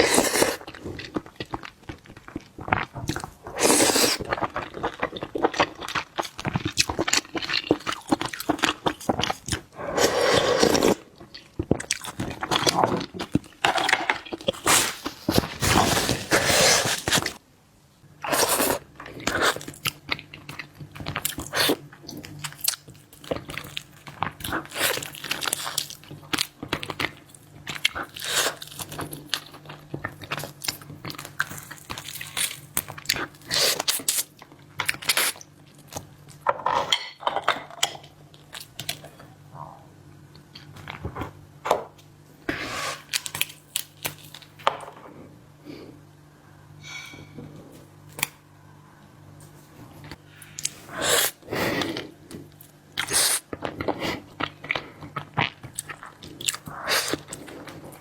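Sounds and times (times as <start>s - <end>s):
person chewing crunchy food: 0.0s - 17.4s, 18.2s - 36.4s, 50.2s - 58.0s.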